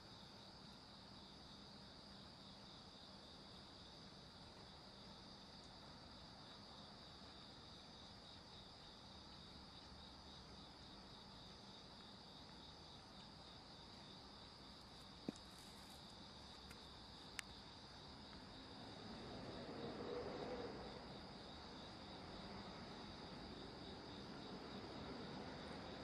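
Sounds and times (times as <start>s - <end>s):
insects chirring: 0.0s - 26.0s.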